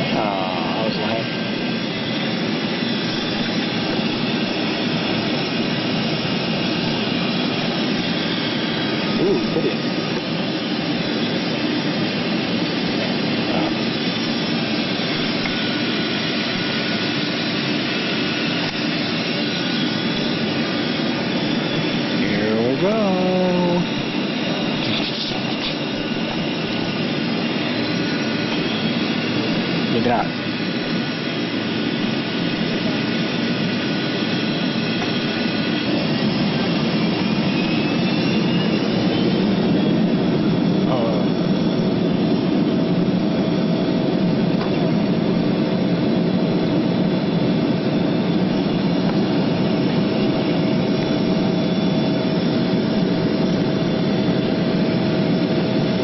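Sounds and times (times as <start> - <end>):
jet engines rushing hum: 0.0 - 56.0.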